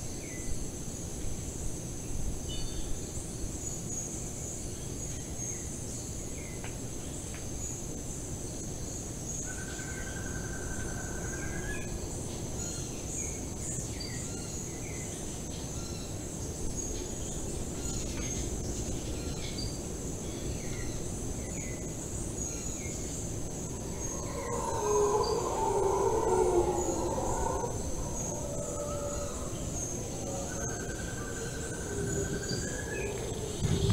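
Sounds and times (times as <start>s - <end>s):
high-pitched insect drone: 22.1s - 33.9s.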